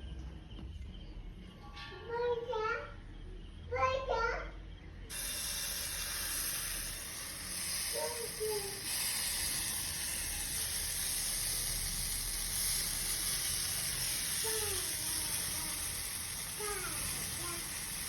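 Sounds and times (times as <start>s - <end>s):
batter sizzling in a hot pan: 5.1s - 18.0s.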